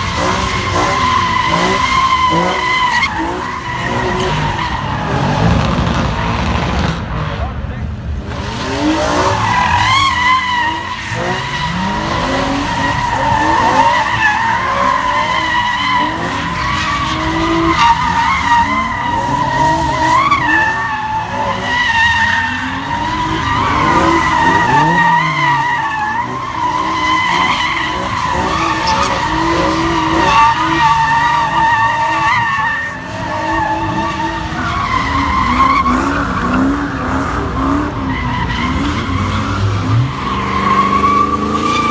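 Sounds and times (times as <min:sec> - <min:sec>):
car tires squealing: 0:00.0 - 0:07.4, 0:08.3 - 0:41.9
engine revving: 0:22.9 - 0:30.8.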